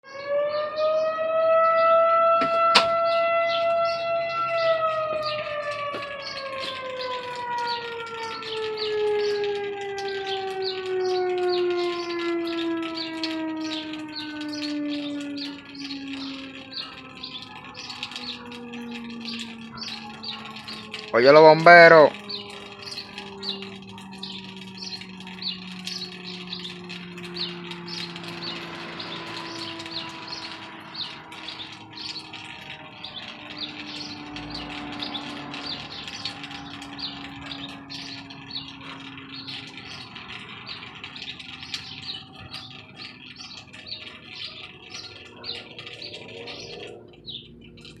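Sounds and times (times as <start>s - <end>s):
small birds chirping: 0.1s - 48.0s.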